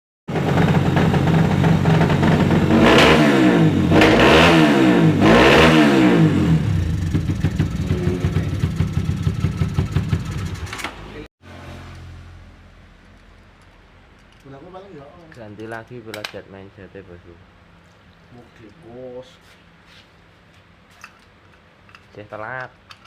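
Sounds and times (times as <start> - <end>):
motorcycle engine revving and idling: 0.3 - 12.9.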